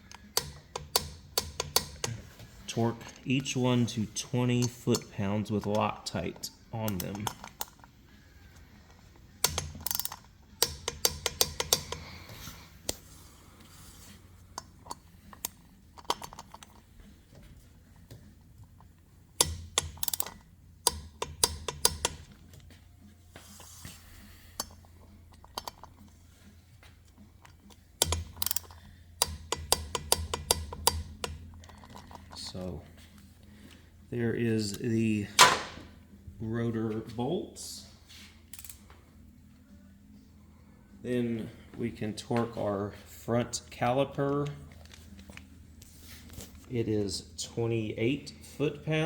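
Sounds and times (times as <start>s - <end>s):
torque wrench ratchet clicking: 0.1s - 2.2s, 9.4s - 12.1s, 19.3s - 22.3s, 28.0s - 31.8s.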